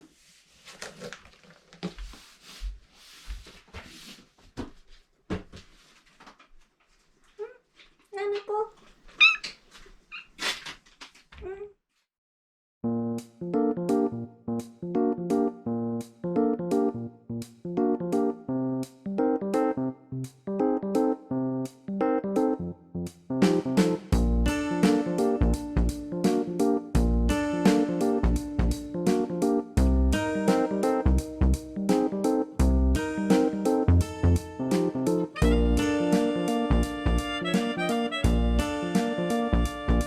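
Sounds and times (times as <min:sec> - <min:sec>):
rustling: 0:00.0 - 0:11.4
piano chords: 0:13.5 - 0:14.3, 0:14.9 - 0:17.1, 0:19.2 - 0:22.8, 0:23.4 - 0:40.0
dull low thumps: 0:24.2 - 0:24.6, 0:27.0 - 0:27.4, 0:29.8 - 0:30.2, 0:32.6 - 0:33.0, 0:35.4 - 0:35.8, 0:38.2 - 0:38.7
light ticking beat: 0:31.0 - 0:40.0.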